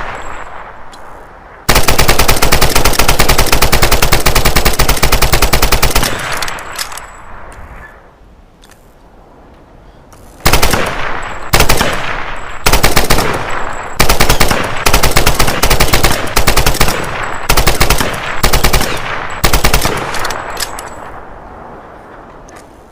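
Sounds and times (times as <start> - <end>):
submachine gun bursts with echo: 1.7 - 7.0, 10.4 - 21.1.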